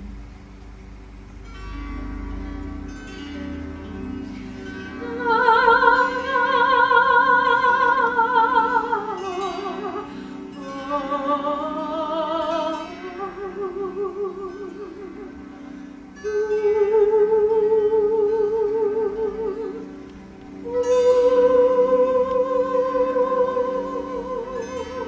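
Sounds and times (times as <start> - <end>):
plucked-string accompaniment: 0.0 - 25.0
woman singing wordless high notes: 5.0 - 25.0.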